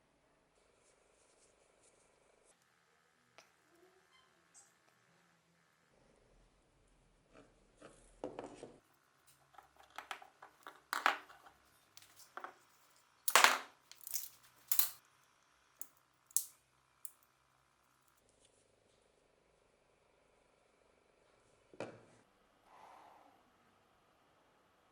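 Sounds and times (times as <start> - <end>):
scrapes and clicks on metal parts: 9.3 - 12.6, 13.3 - 15.0, 16.3 - 16.5.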